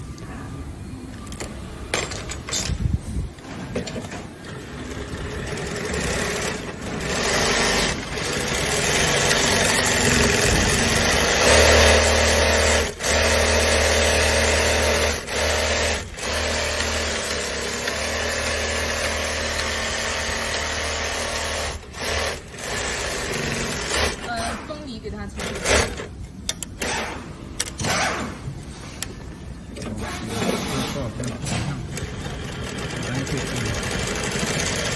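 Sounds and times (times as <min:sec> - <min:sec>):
sewing machine stitching: 0:04.4 - 0:24.6, 0:25.4 - 0:26.1, 0:29.8 - 0:34.9.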